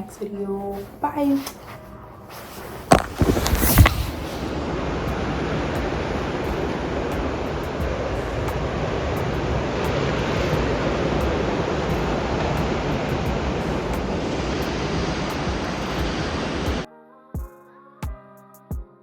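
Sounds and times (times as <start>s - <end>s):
ocean surf on beach: 3.0s - 16.8s.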